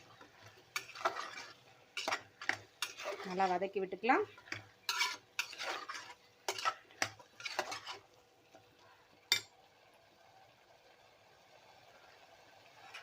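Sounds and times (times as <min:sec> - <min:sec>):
spoon scraping in a pot: 0:00.0 - 0:08.1
faint sizzle: 0:00.0 - 0:13.0.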